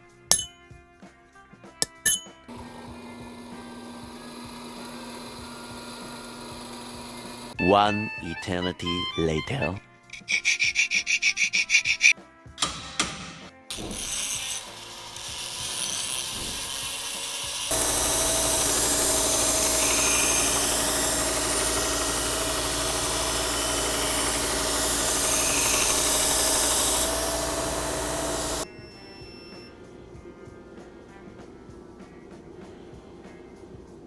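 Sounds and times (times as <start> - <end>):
grinder motor hum: 0.3 - 0.6, 1.8 - 7.6, 13.7 - 34.0
grinder rasping on steel: 0.3 - 0.6, 1.8 - 7.6, 13.7 - 30.2.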